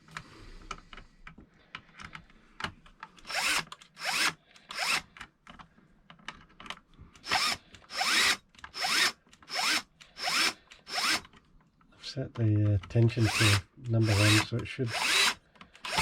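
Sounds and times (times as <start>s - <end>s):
power drill spinning up: 3.2s - 5.1s, 7.2s - 11.2s, 13.2s - 16.0s
small clicks and taps: 4.5s - 7.8s.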